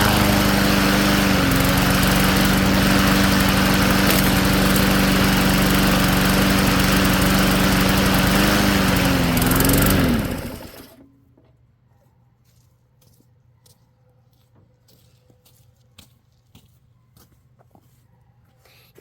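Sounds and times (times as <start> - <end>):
lawnmower engine running: 0.0 - 11.2.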